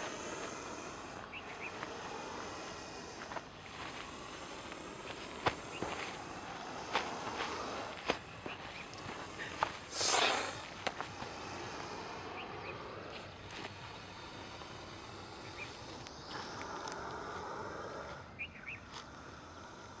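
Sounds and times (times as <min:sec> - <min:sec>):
snake hissing: 0:00.0 - 0:20.0
faint clicks: 0:13.2 - 0:17.5.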